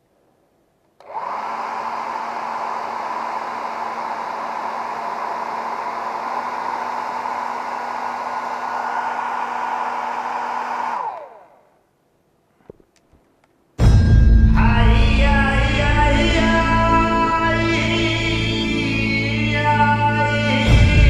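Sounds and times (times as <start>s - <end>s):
electric blower running: 1.0s - 11.8s.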